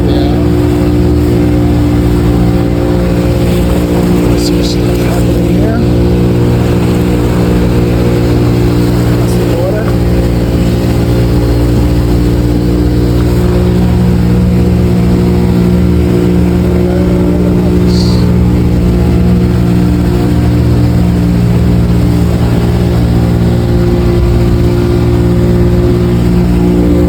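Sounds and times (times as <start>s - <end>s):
outboard motor droning: 0.0s - 27.0s.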